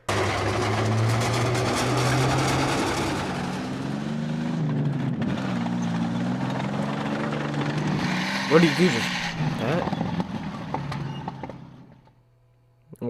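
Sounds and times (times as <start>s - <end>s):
tank track clatter: 0.0s - 12.1s
tank engines running: 0.0s - 12.2s.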